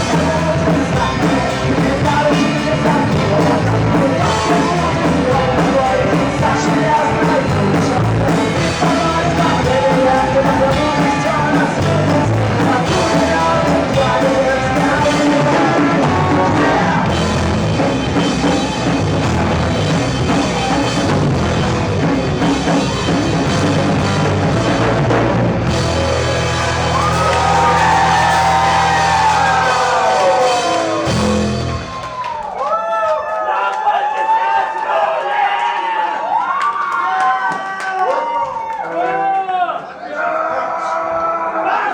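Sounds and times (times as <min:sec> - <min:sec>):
person singing: 0:00.0 - 0:17.9
rock band playing live: 0:00.0 - 0:32.5
high gliding bending guitar notes: 0:10.9 - 0:32.1.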